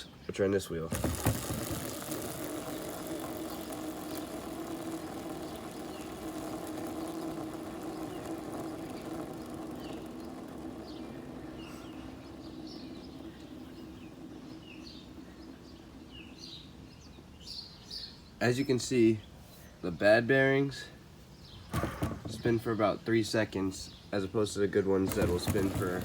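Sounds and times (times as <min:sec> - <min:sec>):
birds chirping: 0:00.0 - 0:26.0
skateboard wheel whirring: 0:00.7 - 0:17.9, 0:21.6 - 0:22.6, 0:24.8 - 0:26.0.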